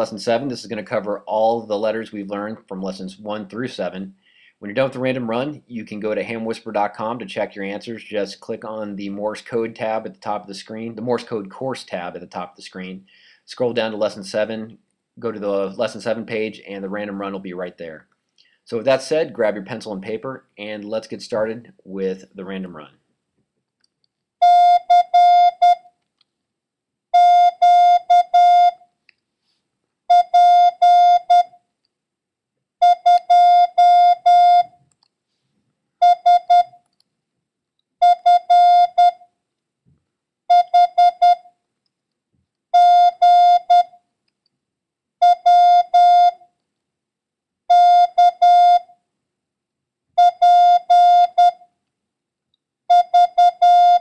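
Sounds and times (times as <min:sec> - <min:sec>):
morse code beeps: 0:24.4 - 0:25.8, 0:27.2 - 0:28.8, 0:30.1 - 0:31.6, 0:32.8 - 0:34.7, 0:36.0 - 0:36.8, 0:38.0 - 0:39.2, 0:40.5 - 0:41.5, 0:42.8 - 0:44.0, 0:45.2 - 0:46.4, 0:47.7 - 0:48.9, 0:50.2 - 0:51.6, 0:52.9 - 0:54.0.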